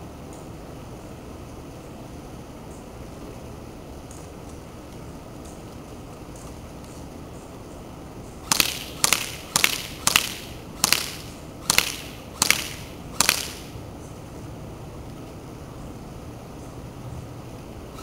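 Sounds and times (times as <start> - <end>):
airsoft gun single shots: 8.5 - 13.7.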